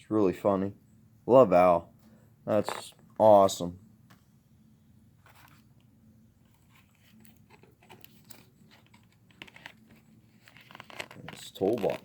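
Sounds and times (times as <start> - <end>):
plastic packaging crinkling: 6.6 - 12.0.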